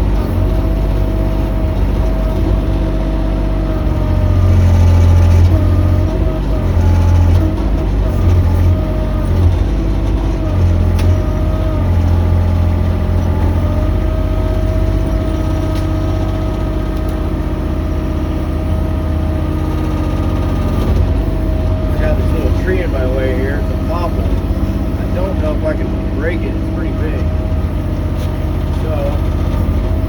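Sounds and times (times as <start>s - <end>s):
excavator engine running: 0.0s - 30.0s
steady whine: 21.2s - 30.0s.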